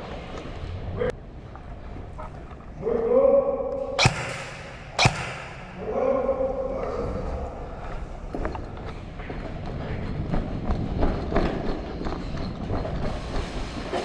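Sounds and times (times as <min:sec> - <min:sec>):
airsoft gun shots: 0:03.9 - 0:05.8.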